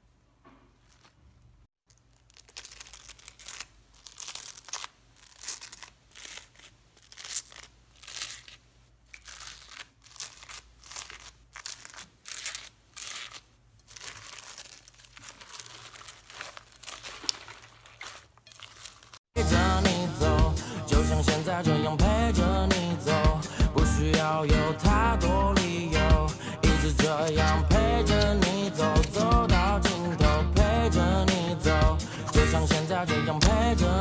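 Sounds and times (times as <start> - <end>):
slime crackling: 2.0 - 19.2.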